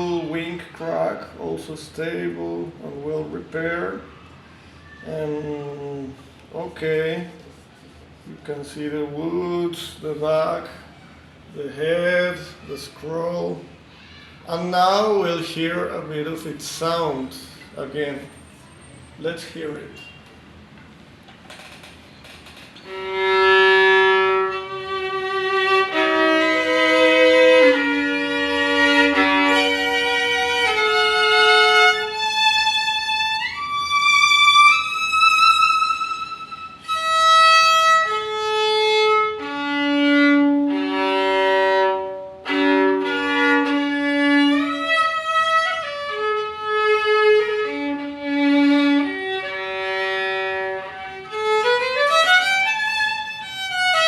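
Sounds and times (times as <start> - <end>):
solo violin slow melody: 22.8 - 54.0.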